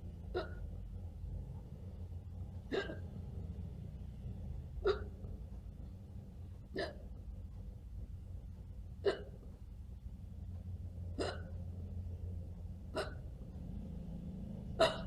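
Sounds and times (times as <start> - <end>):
person hiccuping: 0.3 - 0.7, 2.7 - 3.1, 4.8 - 5.3, 6.7 - 7.1, 9.0 - 9.5, 11.2 - 11.6, 12.9 - 13.3, 14.8 - 15.0.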